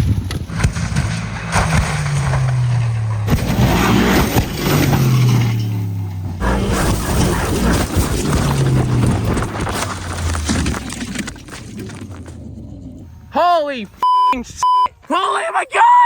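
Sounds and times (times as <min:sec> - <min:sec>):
car crashing down a hill: 0:00.0 - 0:12.5.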